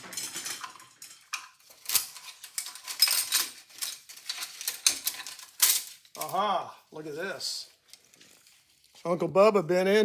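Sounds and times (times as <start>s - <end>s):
metallic clicking and clattering: 0.0s - 6.3s.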